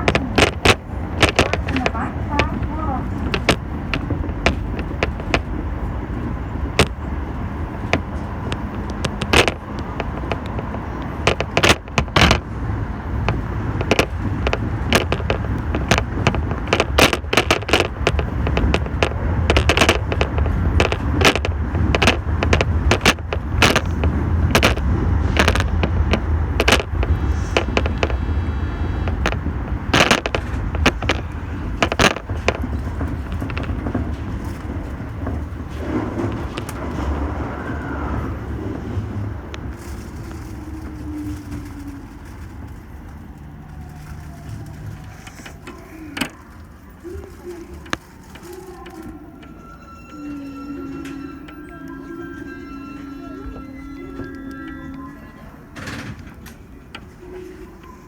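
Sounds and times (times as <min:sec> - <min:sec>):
subway train rumble: 0:00.0 - 0:58.0
wheels clacking on rails: 0:00.0 - 0:58.0
faint high whine: 0:48.6 - 0:56.1.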